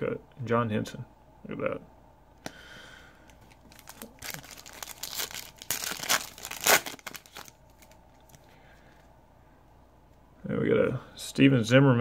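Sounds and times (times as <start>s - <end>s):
foil wrapper tearing and crinkling: 3.4s - 8.0s.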